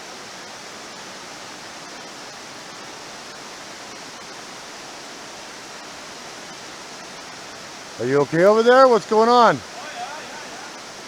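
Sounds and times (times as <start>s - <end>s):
fast-flowing river current: 0.0s - 11.0s.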